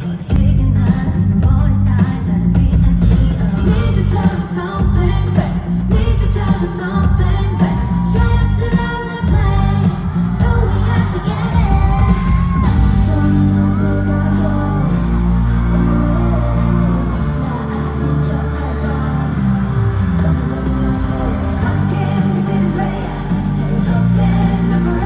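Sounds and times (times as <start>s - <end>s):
heavy bass beat: 0.0s - 25.0s
woman singing pop song: 0.0s - 25.0s.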